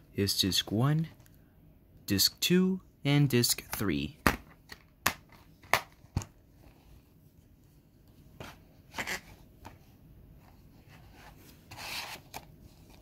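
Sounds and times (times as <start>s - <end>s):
disc case rubbing and scraping: 10.9s - 13.0s.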